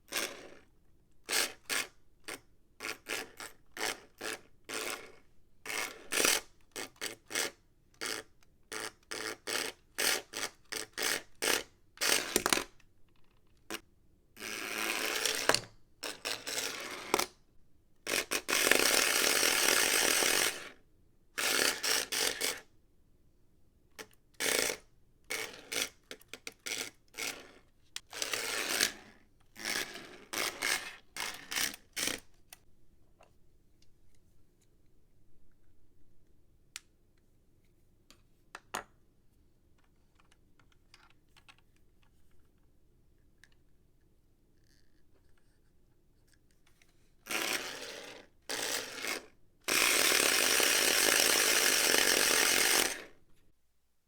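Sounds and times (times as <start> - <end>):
small electric toy motor: 18.1 - 20.8, 21.4 - 22.7, 28.1 - 32.2, 47.3 - 53.2.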